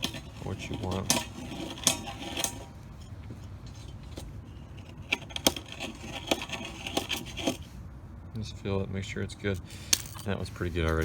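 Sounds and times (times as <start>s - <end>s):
reamer scraping metal conduit: 0.0s - 7.8s.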